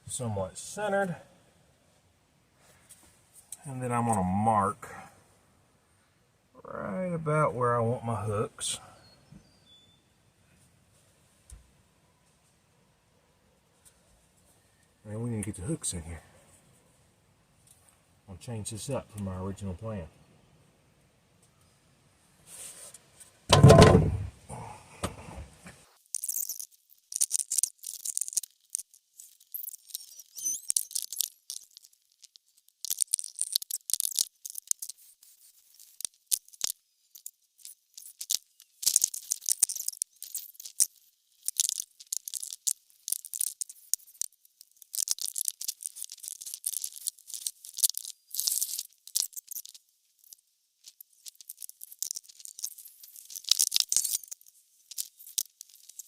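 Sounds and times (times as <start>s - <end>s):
heavy low thump: 23.5s - 24.3s
scraping and rustling: 25.8s - 56.0s.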